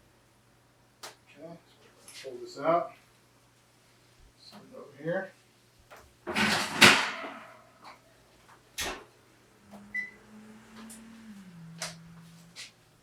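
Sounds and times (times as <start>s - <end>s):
pan clattering: 6.3s - 7.6s
low hum: 9.1s - 13.0s.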